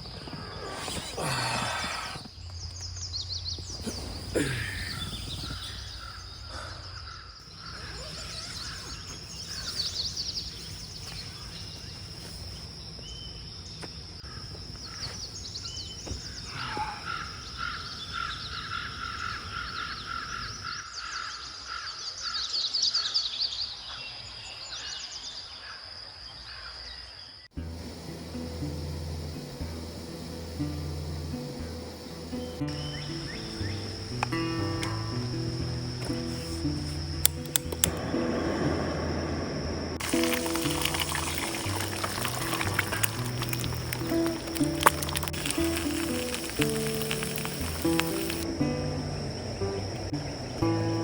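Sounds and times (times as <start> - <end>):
birds calling and chirping: 0.0 - 25.7, 31.3 - 48.7
high-pitched insect drone: 3.8 - 20.8, 27.5 - 51.0.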